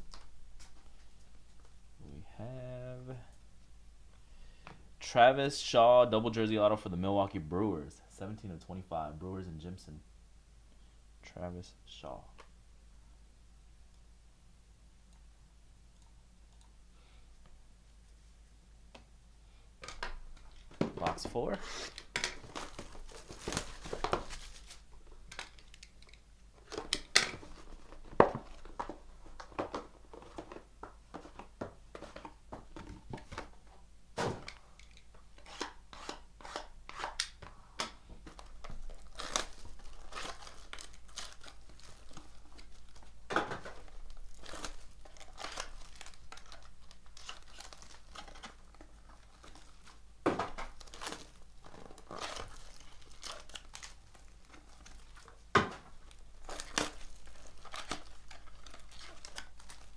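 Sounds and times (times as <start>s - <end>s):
plastic crinkling: 20.0s - 33.7s, 38.2s - 59.9s
wrapper tearing: 21.6s - 28.9s, 38.4s - 59.9s.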